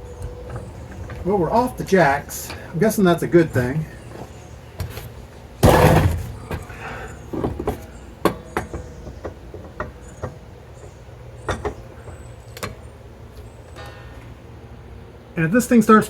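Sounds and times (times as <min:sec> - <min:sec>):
loud scraping rush: 0:05.6 - 0:06.4.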